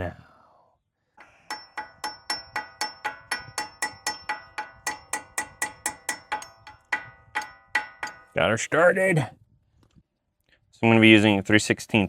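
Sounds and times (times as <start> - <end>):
hammer tapping metal: 1.2 - 8.4.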